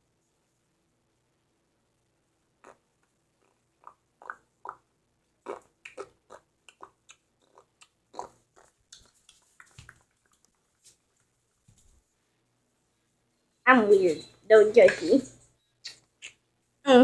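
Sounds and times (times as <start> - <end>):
person chewing crunchily: 5.4 - 10.6.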